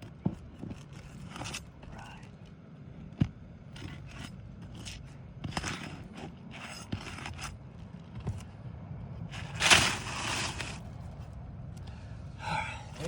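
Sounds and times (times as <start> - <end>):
roofing shingles scraping: 3.8 - 7.9, 9.3 - 11.3.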